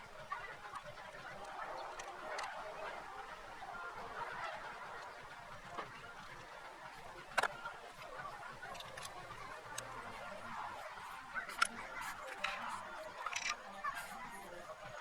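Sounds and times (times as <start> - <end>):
faint steady background noise: 0.0 - 15.0.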